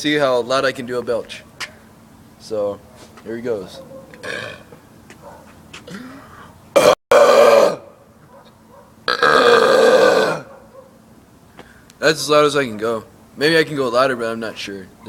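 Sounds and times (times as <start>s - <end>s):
man belching loudly: 4.2s - 4.8s, 6.8s - 7.9s, 9.1s - 10.5s.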